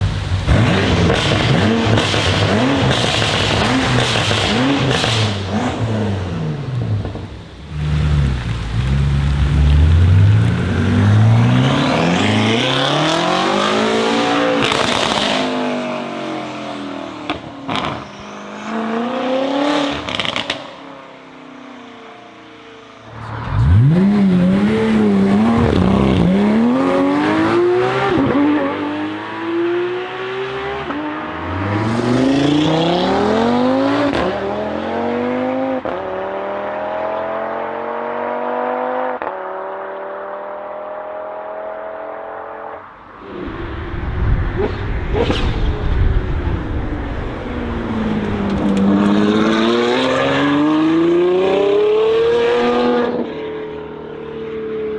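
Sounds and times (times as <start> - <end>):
car engines revving: 0.0 - 54.9.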